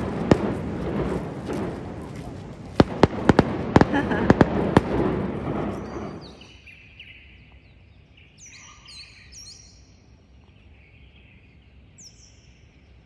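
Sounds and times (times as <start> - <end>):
faint outdoor background: 0.0 - 13.0
songbird chirping: 5.7 - 13.0.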